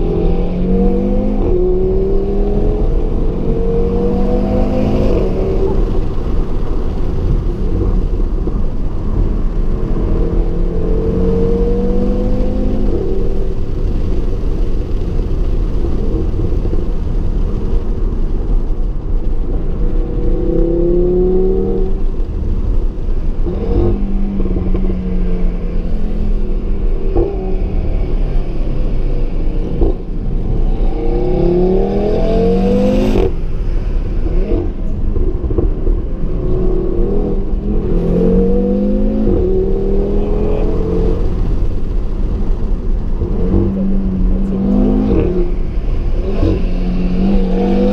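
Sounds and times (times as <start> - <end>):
car engine revving through gears: 0.0 - 8.6, 9.4 - 14.0, 23.4 - 33.4, 36.3 - 47.9.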